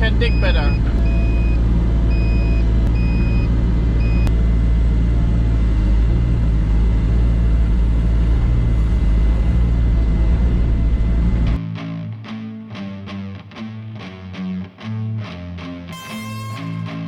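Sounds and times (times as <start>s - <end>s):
travel alarm beeping: 0.0s - 4.4s, 16.0s - 17.0s
diesel engine running: 0.0s - 11.6s.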